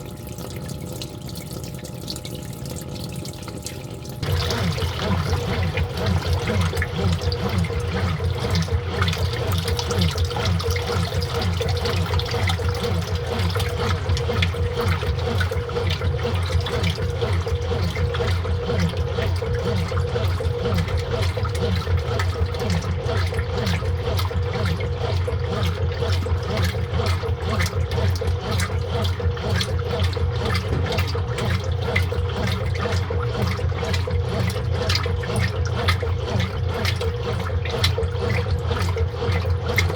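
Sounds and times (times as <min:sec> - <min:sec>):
washing machine running: 0:00.0 - 0:39.9
water rushing: 0:02.9 - 0:22.9.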